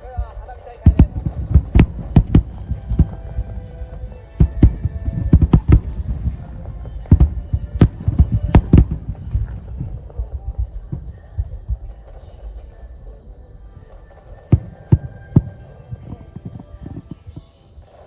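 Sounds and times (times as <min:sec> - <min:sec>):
distant firework booms and cracks: 0:00.0 - 0:17.4
low rumble: 0:00.9 - 0:17.0.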